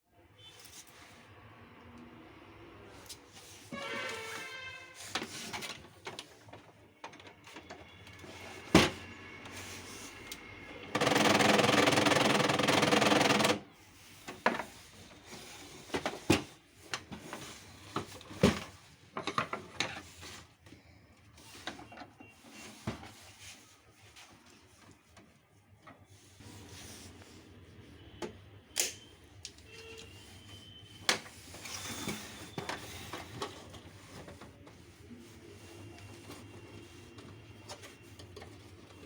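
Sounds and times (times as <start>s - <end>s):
printer gear noise: 10.3s - 13.7s.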